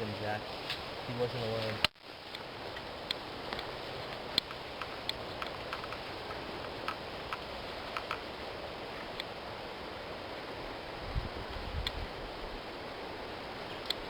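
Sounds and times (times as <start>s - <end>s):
outdoor hiss: 0.0s - 14.0s.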